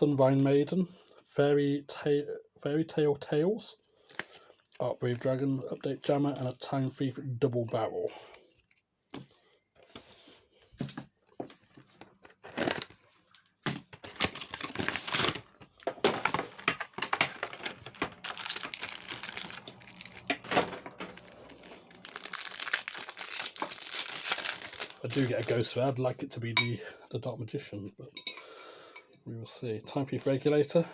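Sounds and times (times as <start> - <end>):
foil wrapper crinkling and tearing: 12.2 - 13.3, 13.9 - 26.0.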